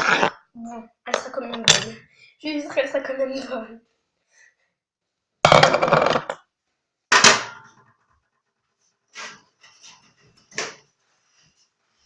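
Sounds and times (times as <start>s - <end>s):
kitchen clatter: 1.1s - 2.0s, 7.1s - 8.4s.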